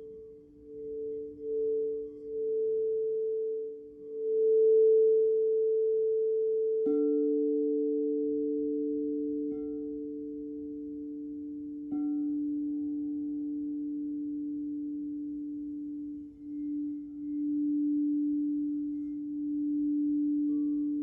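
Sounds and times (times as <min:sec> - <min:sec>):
crystal singing bowls ringing: 0:00.0 - 0:21.0.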